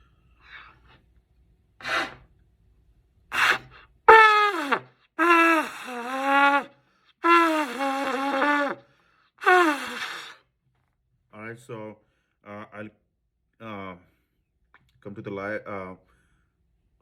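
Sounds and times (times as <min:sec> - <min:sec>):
trumpet wavering notes: 0:04.1 - 0:08.8.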